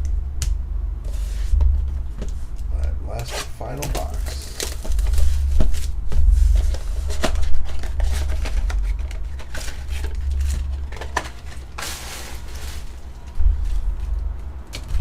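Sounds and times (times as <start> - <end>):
steady low hum: 0.0 - 15.0
cards being handled: 3.2 - 13.4
foil wrapper crinkling: 3.8 - 13.4.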